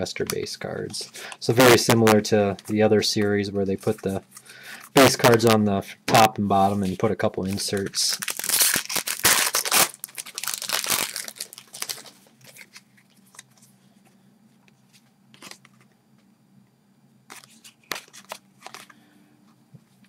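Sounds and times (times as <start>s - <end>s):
foil wrapper tearing and crinkling: 7.6s - 12.8s.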